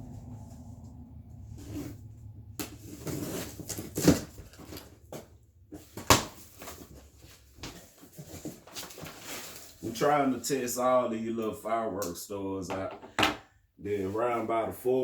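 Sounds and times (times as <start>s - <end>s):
cardboard rustling and scraping: 1.5s - 10.4s.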